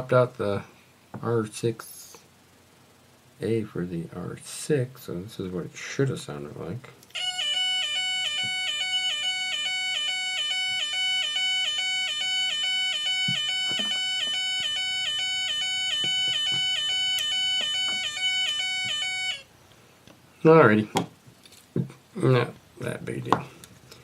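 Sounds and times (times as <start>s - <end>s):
buzzy two-tone electronic siren: 7.1s - 19.5s.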